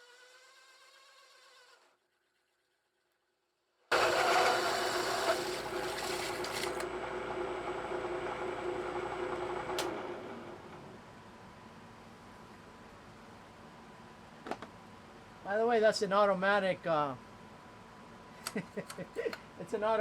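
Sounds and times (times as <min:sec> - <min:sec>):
metal-cutting machine whine: 0:03.9 - 0:06.9.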